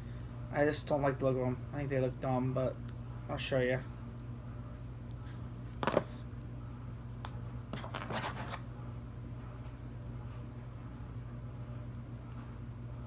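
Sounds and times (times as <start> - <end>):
steady low hum: 0.0 - 13.0
scratchy packaging rustle: 7.8 - 8.6.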